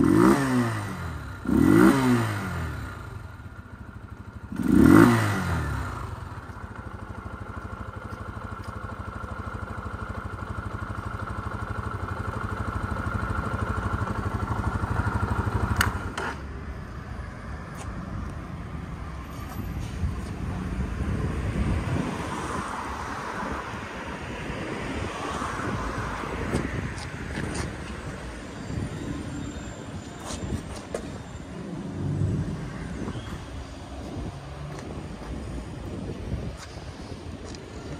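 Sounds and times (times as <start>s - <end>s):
motorcycle engine running: 0.0s - 17.2s.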